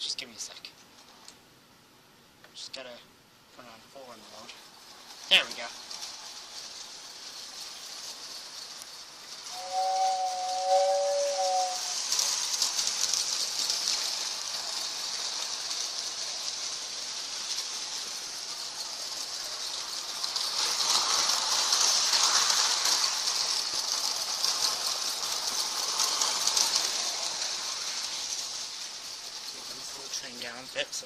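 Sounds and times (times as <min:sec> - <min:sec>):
toy steam locomotive running: 0:03.6 - 0:31.0
two-tone train whistle: 0:09.5 - 0:12.0.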